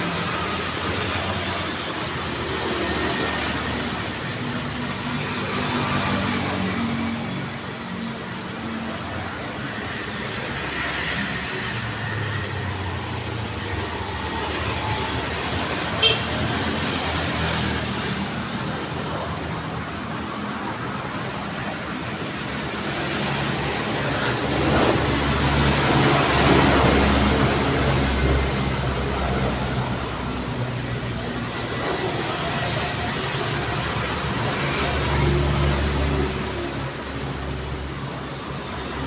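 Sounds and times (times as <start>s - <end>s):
street traffic: 0.0s - 39.0s.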